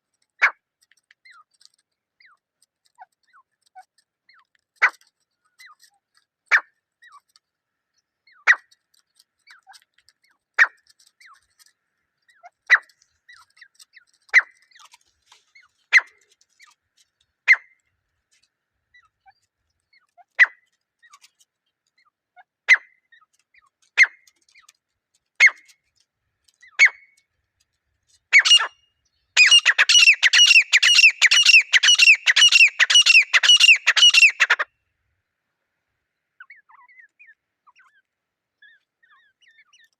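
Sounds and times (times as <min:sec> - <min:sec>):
francolin calling: 0:28.4 - 0:28.8, 0:29.4 - 0:34.6.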